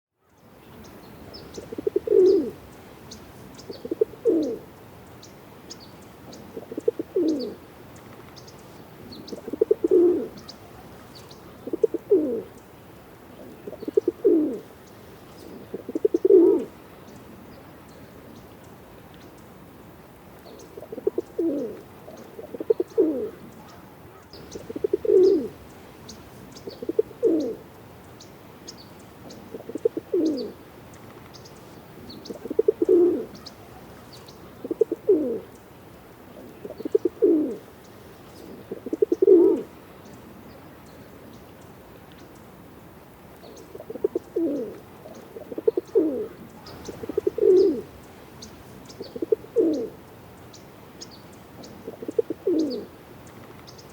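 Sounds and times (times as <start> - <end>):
pigeon cooing: 1.5 - 2.6, 3.7 - 4.7, 6.3 - 7.6, 9.1 - 12.6, 13.4 - 14.7, 15.4 - 16.7, 20.8 - 25.6, 26.6 - 27.7, 29.4 - 30.6, 32.1 - 35.5, 36.3 - 37.7, 38.4 - 39.7, 43.7 - 48.0, 49.0 - 50.0, 51.8 - 52.9.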